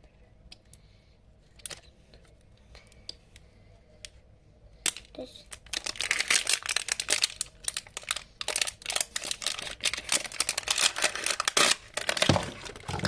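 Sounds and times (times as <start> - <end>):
wrapping crinkling and tearing: 5.0 - 13.0.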